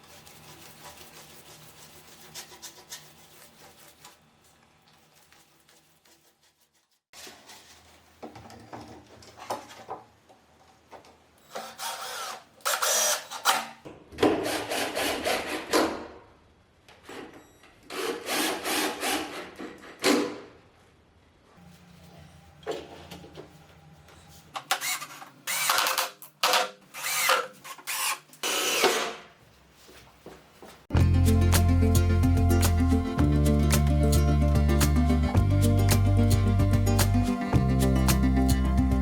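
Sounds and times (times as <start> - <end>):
tools scraping and rubbing wood: 0.0 - 7.9.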